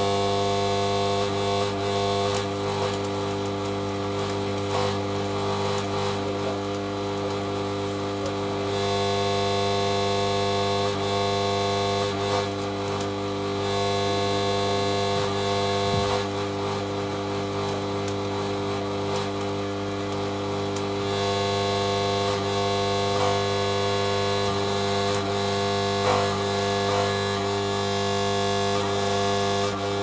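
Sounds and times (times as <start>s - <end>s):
electrical hum: 0.0s - 30.0s
welding arc crackling: 0.0s - 30.0s.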